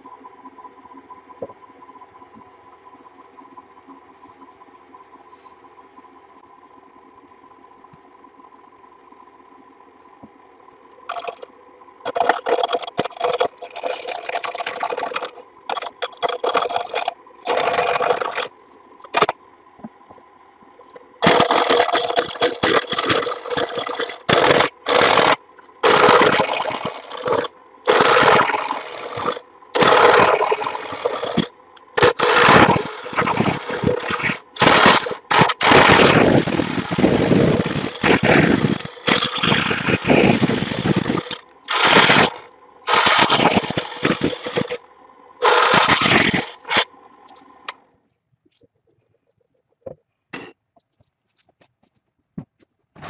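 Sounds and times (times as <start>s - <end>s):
power tool cutting or grinding: 12.1s - 18.5s, 19.1s - 19.3s, 21.2s - 44.8s, 45.4s - 46.9s.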